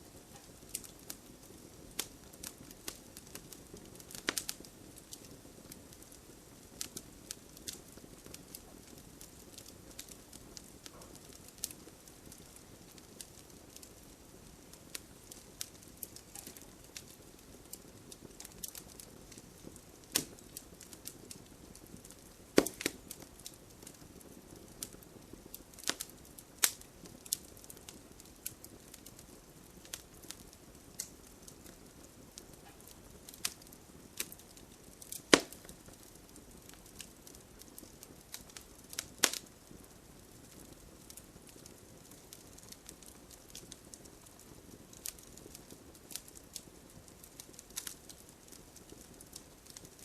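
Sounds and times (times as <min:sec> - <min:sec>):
hiss of burning: 0:00.0 - 0:50.0
wood fire crackling: 0:00.0 - 0:50.0
sharp pops and snaps: 0:14.9 - 0:17.1, 0:20.0 - 0:27.8, 0:29.8 - 0:31.2, 0:32.6 - 0:36.1, 0:36.8 - 0:39.4.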